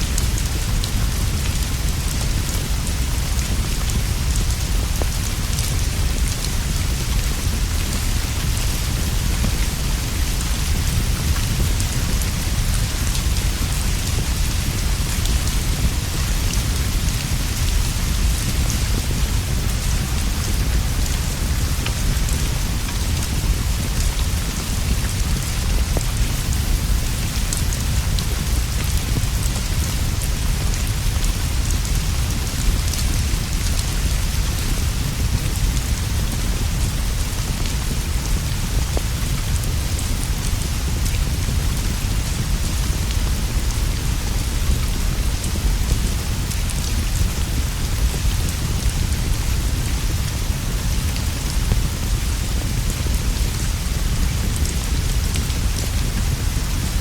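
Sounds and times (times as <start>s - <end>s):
rain on leaves and straw roof: 0.0s - 57.0s
wood fire crackling: 22.8s - 29.1s.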